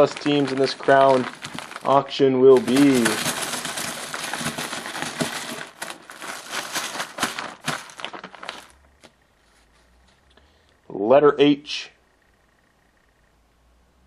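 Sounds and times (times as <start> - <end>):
small hard pieces rattling: 0.0 - 8.8.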